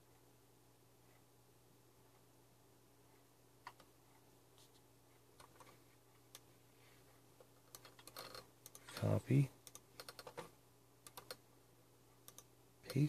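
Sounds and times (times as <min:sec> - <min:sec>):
computer mouse and keyboard clicks: 0:03.6 - 0:03.9, 0:05.4 - 0:06.5, 0:07.7 - 0:11.4, 0:12.2 - 0:13.0.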